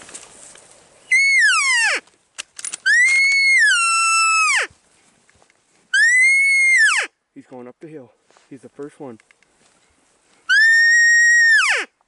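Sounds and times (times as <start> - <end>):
elk bugling: 1.1 - 2.1
sharp clicks: 2.3 - 3.2.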